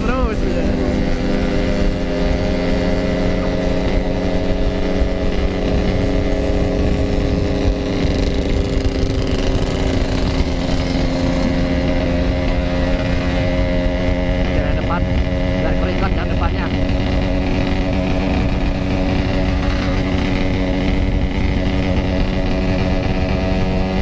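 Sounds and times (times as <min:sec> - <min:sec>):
motorcycle engine running: 0:00.0 - 0:24.0
wind rumble on microphone: 0:00.0 - 0:24.0.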